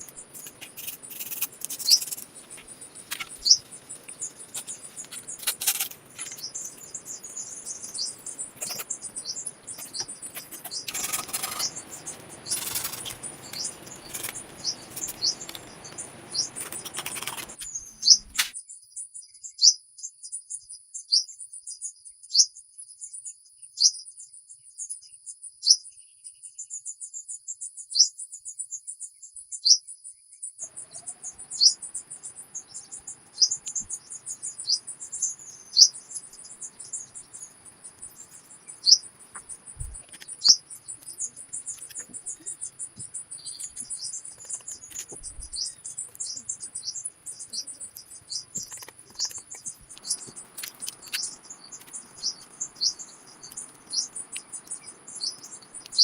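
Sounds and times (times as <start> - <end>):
insect trill: 0.0 - 18.4, 30.6 - 56.0
small birds chirping: 0.0 - 56.0
rustling: 8.2 - 18.5.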